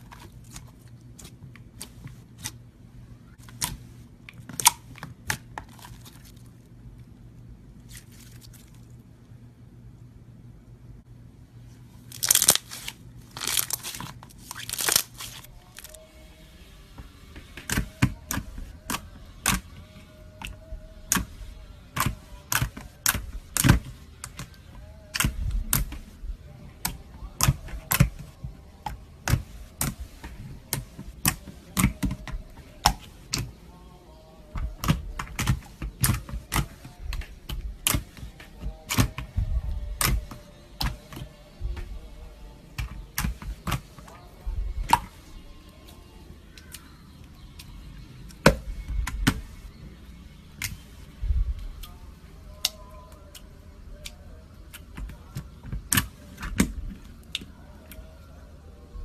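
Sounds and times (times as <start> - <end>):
slime squishing: 0.0 - 6.8, 7.7 - 9.1, 11.7 - 16.0, 17.4 - 33.6, 34.5 - 49.8.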